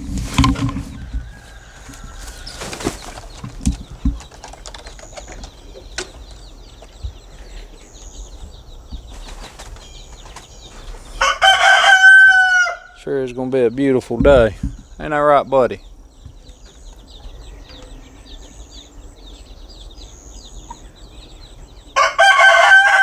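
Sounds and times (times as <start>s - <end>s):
chicken wings flapping: 0.0s - 6.4s, 9.0s - 11.6s
small knocks: 0.0s - 7.2s, 14.1s - 15.1s
chickens scratching: 0.0s - 23.0s
rooster crowing: 0.7s - 3.0s, 11.2s - 13.0s, 21.9s - 23.0s.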